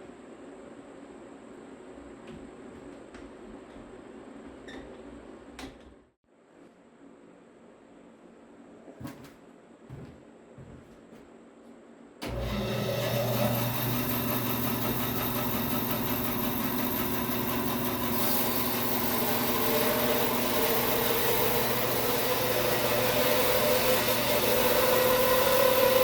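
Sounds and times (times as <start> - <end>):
bandsaw running: 12.2 - 26.0.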